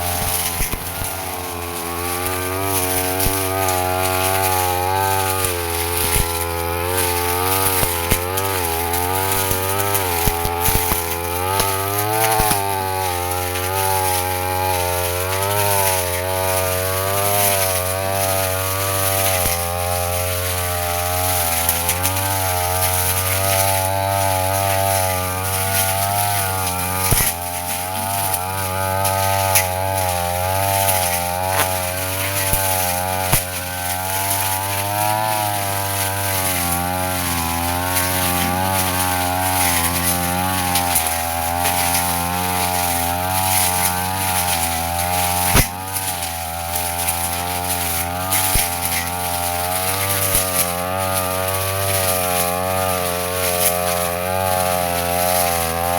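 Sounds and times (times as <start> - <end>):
blade ticking on stems: 0.0 - 55.9
brush cutter engine running: 0.0 - 55.9.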